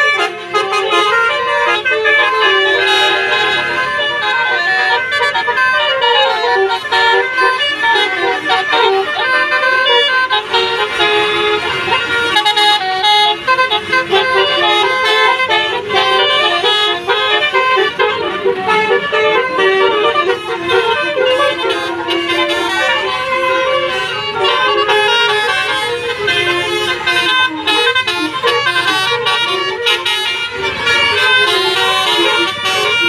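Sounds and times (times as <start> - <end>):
musical bus air horns: 0.0 - 33.0.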